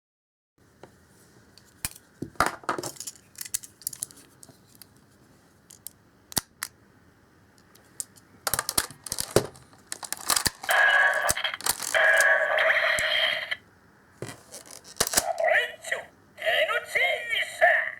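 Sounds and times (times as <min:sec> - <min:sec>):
plastic toy clicking and rattling: 0:08.5 - 0:12.3, 0:14.5 - 0:15.4
toy electronic sound effect: 0:10.6 - 0:13.6, 0:15.2 - 0:17.9.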